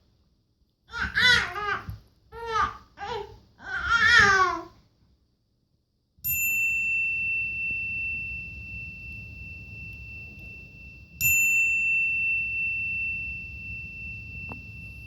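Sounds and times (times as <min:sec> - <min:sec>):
bell ding ringing: 0:06.3 - 0:15.0.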